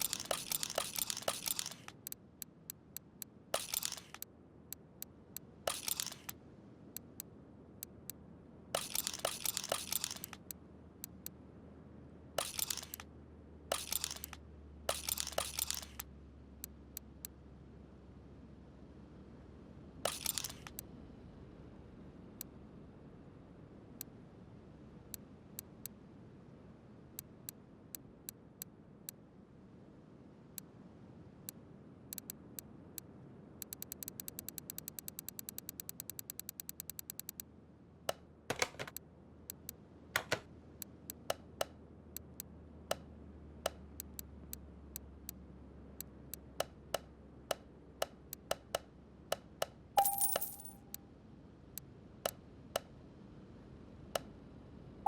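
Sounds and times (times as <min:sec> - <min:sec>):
metal parts clicking: 0:00.0 - 0:02.2, 0:03.6 - 0:04.2, 0:05.7 - 0:06.3, 0:08.8 - 0:10.5, 0:12.4 - 0:13.0, 0:13.7 - 0:16.0, 0:20.1 - 0:20.8, 0:50.0 - 0:50.8
metal piece ringing: 0:50.0 - 0:50.8.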